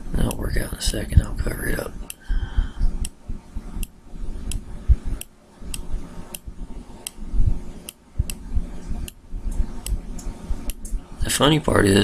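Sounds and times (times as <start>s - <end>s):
soft low thumps: 0.0s - 1.7s, 2.3s - 11.2s.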